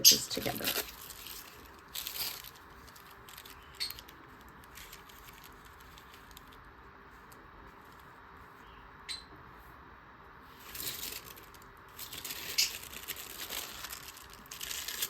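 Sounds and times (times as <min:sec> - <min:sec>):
paper rustling and clicking: 0:00.3 - 0:06.6, 0:10.6 - 0:15.0.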